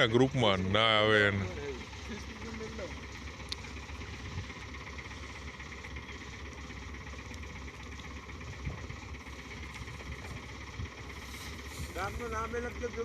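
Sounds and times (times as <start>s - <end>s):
threshing machine drone: 0.0s - 13.0s.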